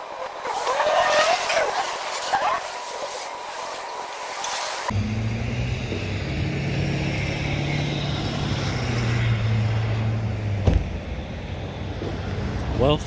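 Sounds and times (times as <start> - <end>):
engine running low hum: 4.9 - 13.0
sharp knock: 10.6 - 11.0.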